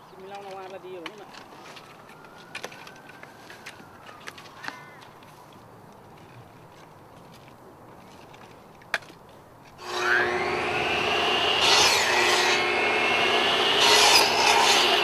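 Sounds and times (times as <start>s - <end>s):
electric saw motor whining: 9.8s - 15.0s
saw blade rasping through wood: 9.8s - 15.0s.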